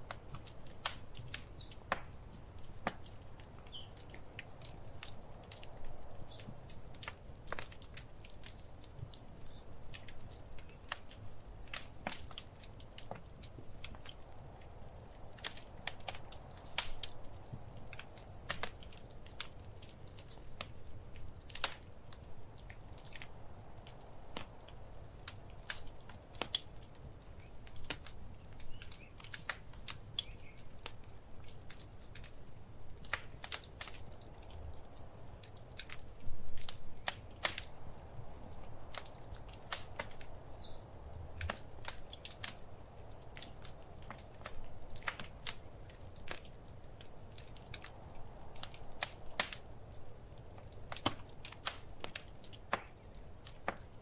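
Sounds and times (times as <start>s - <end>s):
fire pops and snaps: 0.0s - 54.0s
low rumble of burning fire: 0.0s - 54.0s.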